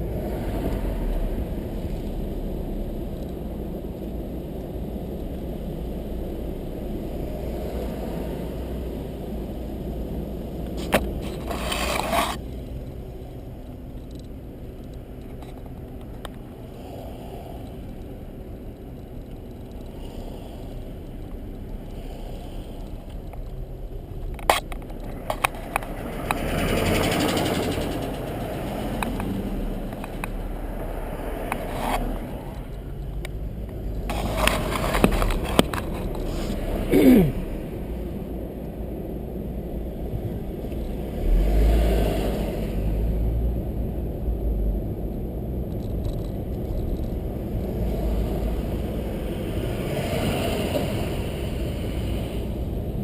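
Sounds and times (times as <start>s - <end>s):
car road and engine rumble: 0.0s - 53.0s
rushing air: 46.2s - 53.0s.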